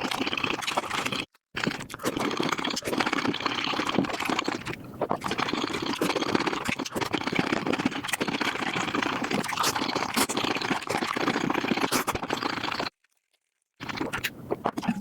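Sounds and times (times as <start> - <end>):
fast chewing and crunching: 0.0 - 15.0.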